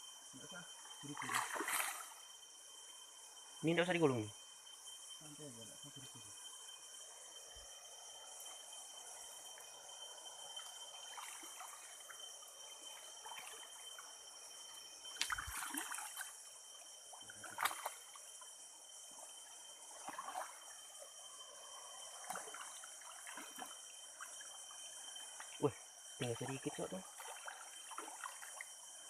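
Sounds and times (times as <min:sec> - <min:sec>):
river water trickling: 0:00.0 - 0:03.7, 0:06.3 - 0:29.0
insects droning: 0:00.0 - 0:29.0
water splashes: 0:01.0 - 0:02.2, 0:11.0 - 0:12.2, 0:12.9 - 0:13.8, 0:15.2 - 0:16.4, 0:17.1 - 0:18.2, 0:19.9 - 0:20.7, 0:22.1 - 0:24.6, 0:25.2 - 0:28.7.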